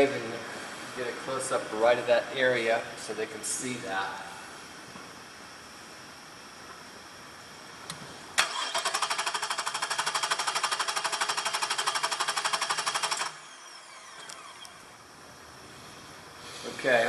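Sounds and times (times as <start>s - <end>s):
car engine cranking on starter: 8.4s - 14.8s.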